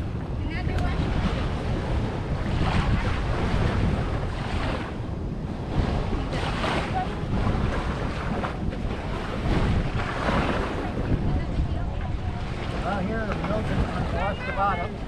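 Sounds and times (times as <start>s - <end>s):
surf washing onto beach: 0.0s - 15.0s
wind buffeting microphone: 0.0s - 15.0s.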